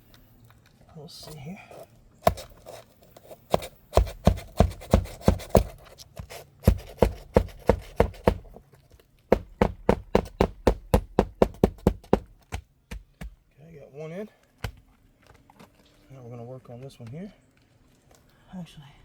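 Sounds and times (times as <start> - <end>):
hammer striking nail: 2.2 - 8.6, 9.3 - 13.4.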